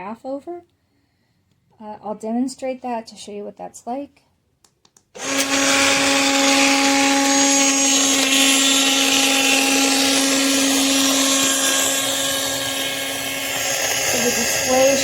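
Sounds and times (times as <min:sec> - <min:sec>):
blender motor running: 0:05.2 - 0:15.0.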